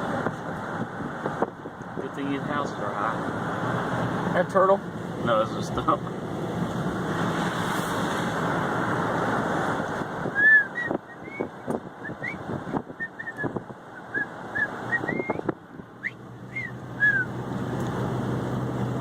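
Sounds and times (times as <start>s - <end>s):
wind on microphone: 0.0s - 2.1s, 6.8s - 17.2s
low engine hum: 0.0s - 19.0s
vehicle running noise: 0.0s - 19.0s
short whistled chirps: 10.4s - 12.4s, 13.0s - 15.4s, 16.0s - 17.3s.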